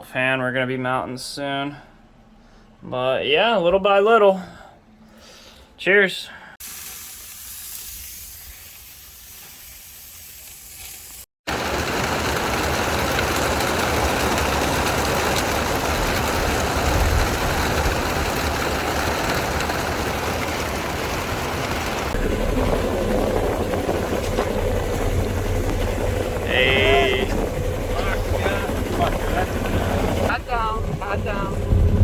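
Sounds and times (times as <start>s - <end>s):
wind and water rushing: 11.5s - 30.3s.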